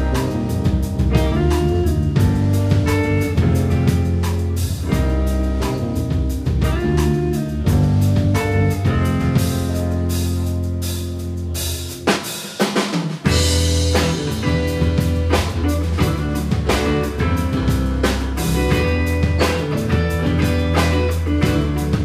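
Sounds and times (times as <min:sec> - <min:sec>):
drum break: 0:00.0 - 0:22.0
live rock band playing: 0:00.0 - 0:22.0.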